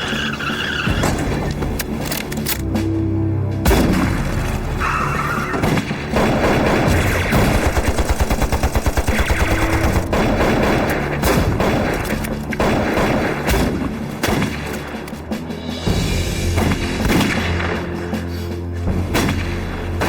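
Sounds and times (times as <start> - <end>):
scattered gunshots: 5.4 - 14.9
automatic gunfire: 6.1 - 14.7.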